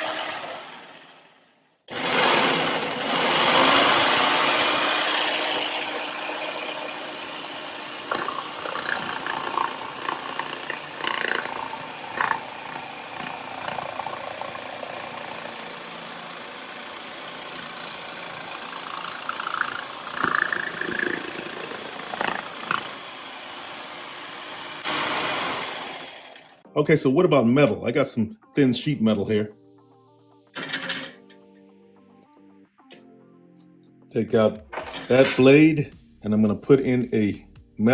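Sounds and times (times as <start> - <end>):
jigsaw cutting wood: 0.0 - 26.6.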